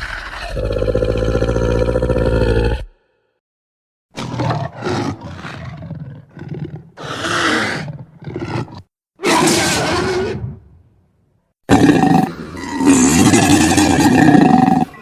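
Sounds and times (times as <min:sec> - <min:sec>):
creature growls and grunts: 0:00.0 - 0:03.0, 0:11.7 - 0:15.0
creature loud roar: 0:00.0 - 0:03.0, 0:06.4 - 0:10.3, 0:11.7 - 0:15.0.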